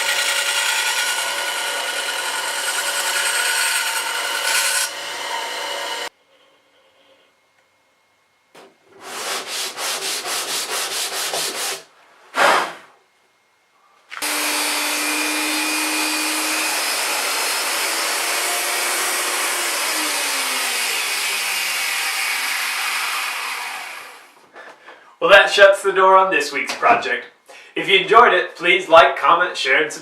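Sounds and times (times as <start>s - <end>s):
hand sanding wood: 9.0s - 12.9s.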